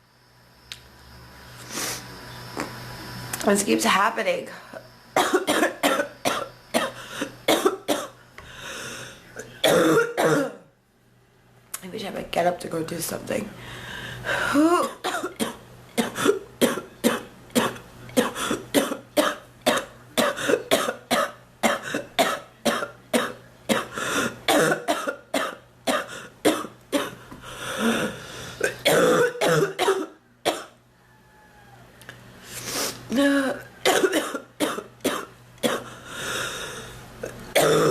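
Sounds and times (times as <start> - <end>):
woman coughing: 5.2 - 8.2, 9.6 - 10.6, 14.5 - 23.9, 24.5 - 27.2, 27.8 - 30.8, 33.1 - 35.9, 37.2 - 37.9.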